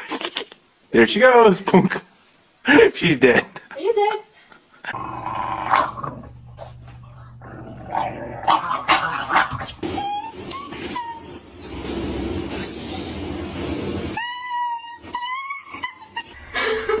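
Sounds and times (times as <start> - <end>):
dog growling: 4.9 - 13.1
dog whining: 8.4 - 13.5, 14.1 - 16.4.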